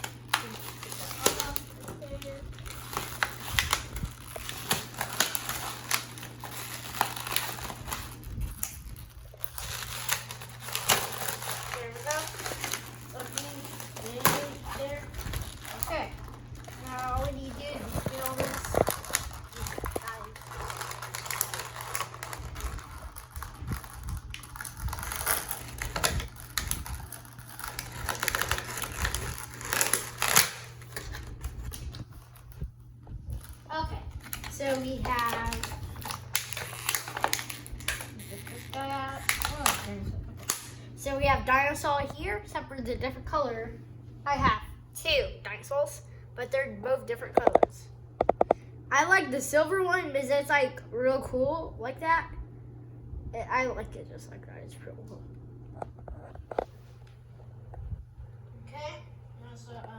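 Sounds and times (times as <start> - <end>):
plastic packaging crinkling: 0.0 - 41.0.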